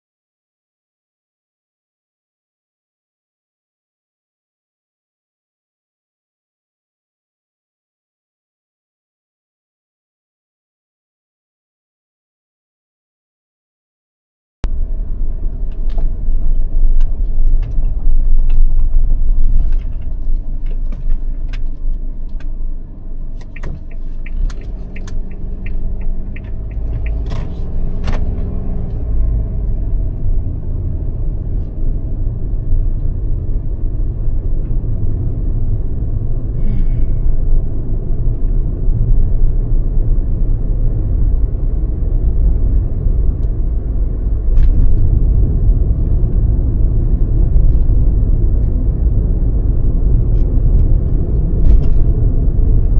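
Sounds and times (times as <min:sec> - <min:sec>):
car road rumble: 0:14.6 - 0:52.9.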